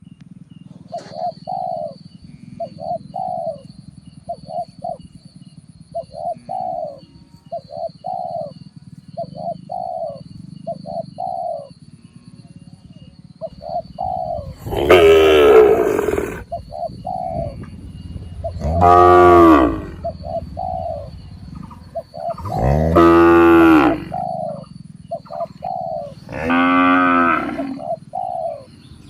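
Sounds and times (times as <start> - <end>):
dove cooing: 0.7 - 5.1, 5.8 - 11.9, 12.5 - 28.8
low hum: 13.8 - 28.7.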